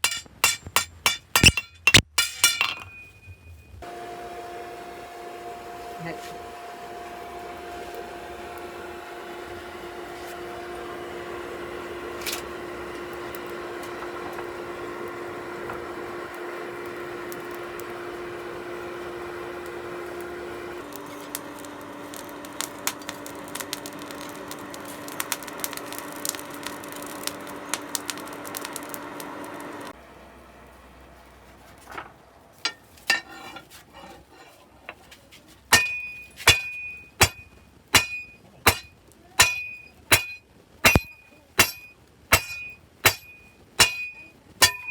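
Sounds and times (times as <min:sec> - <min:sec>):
steel grinding crackle: 0:00.0 - 0:30.0, 0:30.6 - 0:44.9
electric grinder motor humming: 0:03.8 - 0:30.0.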